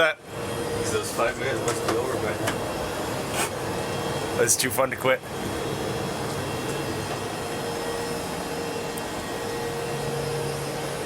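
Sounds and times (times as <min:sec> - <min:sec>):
air circulation whooshing hum: 0:00.0 - 0:11.0
low machinery hum: 0:00.0 - 0:11.0.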